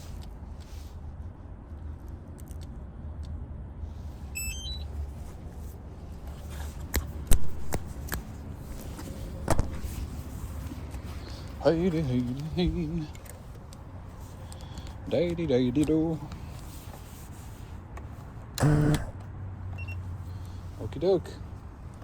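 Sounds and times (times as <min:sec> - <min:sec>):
steady low rumble: 0:00.0 - 0:19.2
short high electronic beeps: 0:04.4 - 0:04.9
sharp clicks or knocks: 0:07.0 - 0:08.2, 0:09.5 - 0:09.9.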